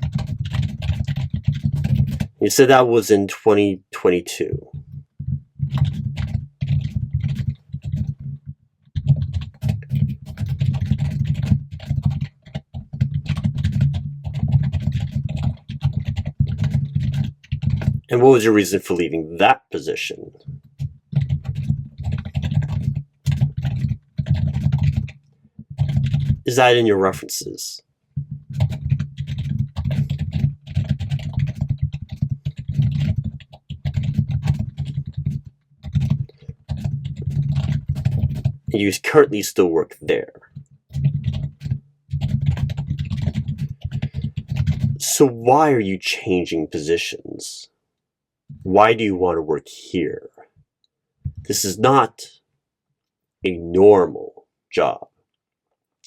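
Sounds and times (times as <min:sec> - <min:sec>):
fast typing on keyboard: 0:00.0 - 0:03.0, 0:04.6 - 0:19.6, 0:20.4 - 0:27.0, 0:28.2 - 0:39.4, 0:40.1 - 0:45.3.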